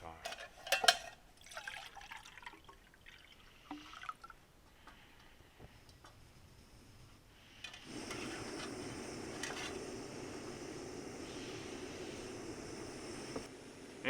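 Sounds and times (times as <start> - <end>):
gas burner hissing: 4.6 - 14.0.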